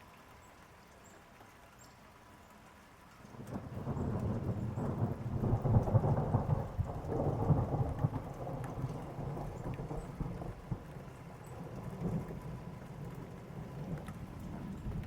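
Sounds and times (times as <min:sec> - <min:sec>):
rain falling: 0:00.0 - 0:15.0
rolling thunder: 0:03.5 - 0:15.0.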